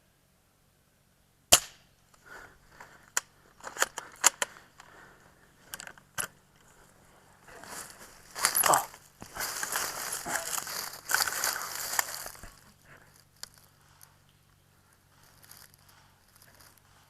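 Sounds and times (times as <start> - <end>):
airsoft rifle shot: 1.5 - 1.9.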